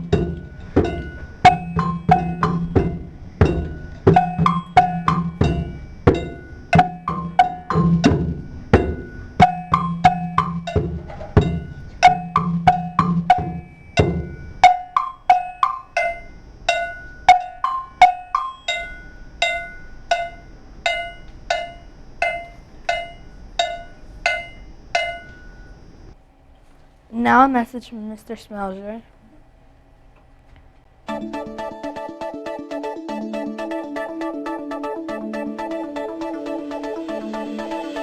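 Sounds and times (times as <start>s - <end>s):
low hand drum beats: 0.0s - 25.5s
sharp pitched percussion strikes: 0.0s - 26.0s.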